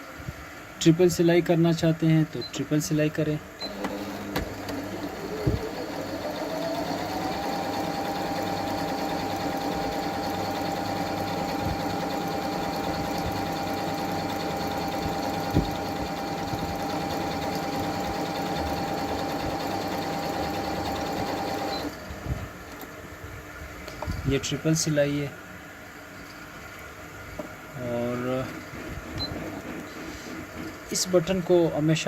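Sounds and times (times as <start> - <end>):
sewing machine motor: 3.6 - 21.9.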